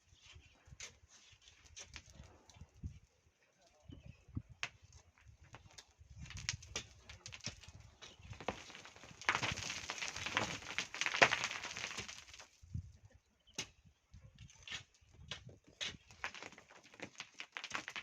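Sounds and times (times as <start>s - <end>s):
gritty sand rattling: 5.5s - 12.6s, 15.8s - 18.0s.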